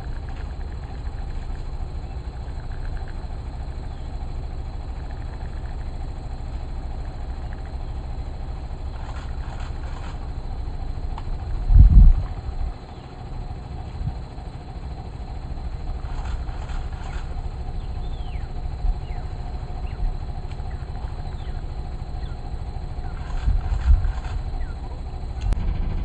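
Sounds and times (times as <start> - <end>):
vehicle engine idling: 0.0 - 26.0
birds whistling: 3.7 - 4.5, 12.3 - 13.3, 16.0 - 25.2.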